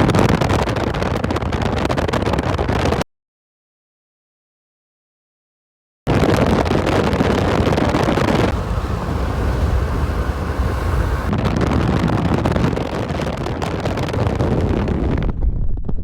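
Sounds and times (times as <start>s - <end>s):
wind buffeting microphone: 6.2s - 16.0s.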